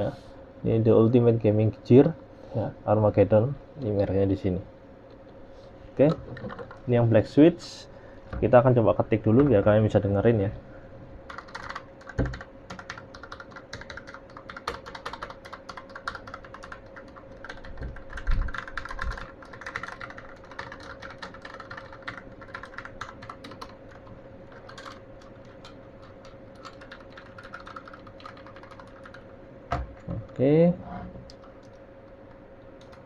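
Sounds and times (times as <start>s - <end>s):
heavier keyboard thumps: 11.4s - 12.9s.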